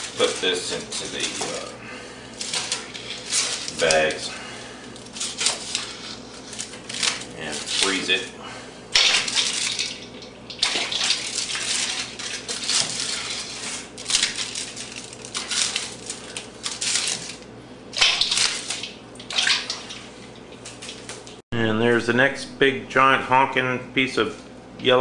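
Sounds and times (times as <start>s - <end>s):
water running and splashing: 9.0s - 16.1s, 18.0s - 21.4s.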